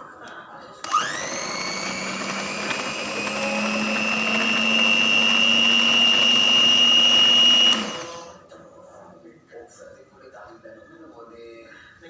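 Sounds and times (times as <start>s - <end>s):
stand mixer motor whine: 0.8s - 8.4s.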